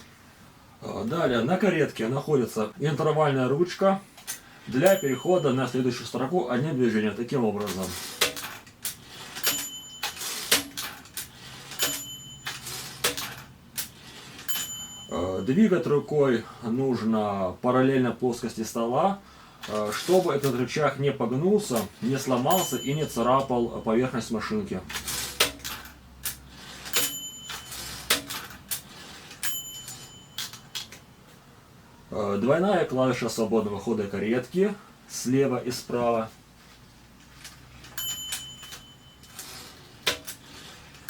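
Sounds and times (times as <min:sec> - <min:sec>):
typewriter bell ding: 0:04.7 - 0:16.4, 0:21.6 - 0:31.2, 0:37.9 - 0:41.0
typewriter carriage clicks and clunks: 0:07.4 - 0:15.0, 0:19.6 - 0:20.8, 0:24.8 - 0:31.0, 0:37.4 - 0:41.0.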